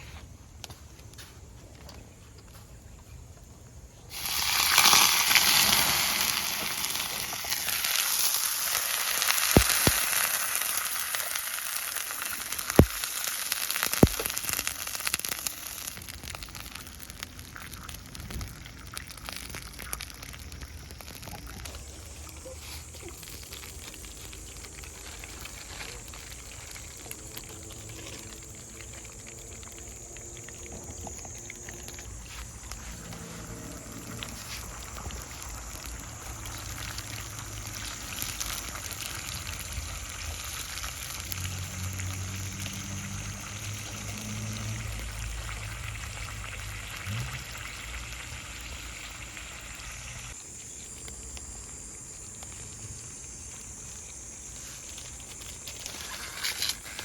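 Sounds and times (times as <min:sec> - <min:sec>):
food sizzling in a pan: 0:04.1 - 0:27.7, 0:32.2 - 0:54.8.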